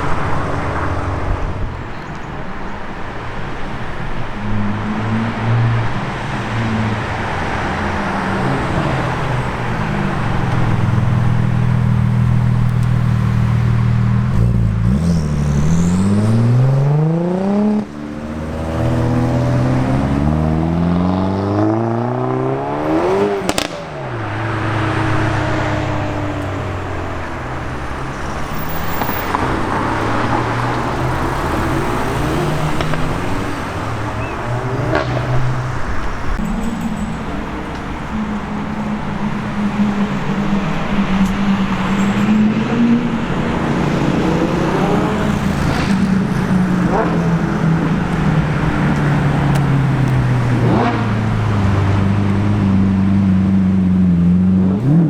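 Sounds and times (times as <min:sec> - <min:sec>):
car engine accelerating: 0:00.0 - 0:02.4, 0:03.1 - 0:55.0.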